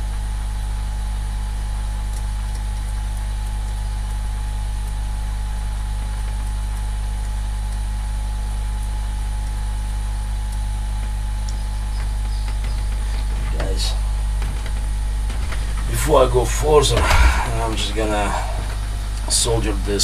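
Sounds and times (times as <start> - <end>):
low mechanical hum: 0.0 - 20.0
faint ticks: 2.0 - 4.2, 8.7 - 15.9
faint whine: 6.6 - 20.0.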